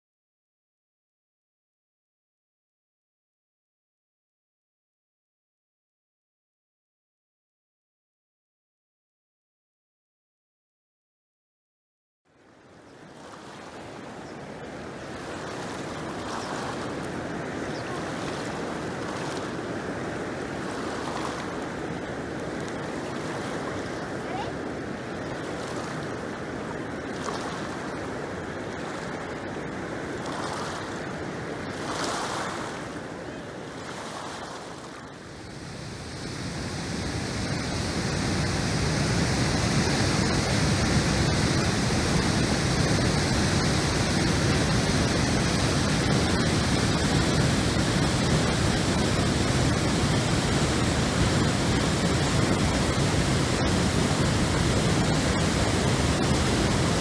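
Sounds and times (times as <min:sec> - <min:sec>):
floodwater rushing: 0:12.4 - 0:57.0.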